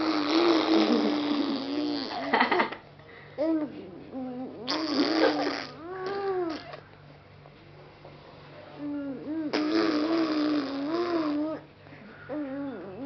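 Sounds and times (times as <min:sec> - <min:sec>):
baby blowing raspberries: 0:00.0 - 0:02.3, 0:04.6 - 0:06.8, 0:09.4 - 0:11.6.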